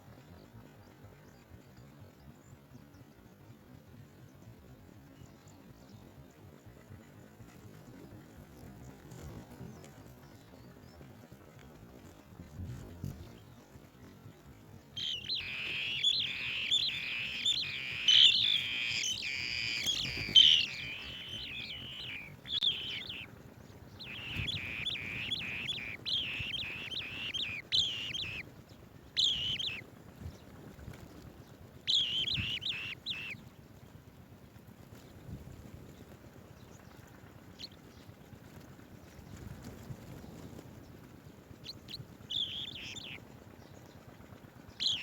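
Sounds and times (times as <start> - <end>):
birds chirping rapidly: 15.0 - 33.4, 41.7 - 44.1, 44.7 - 45.0.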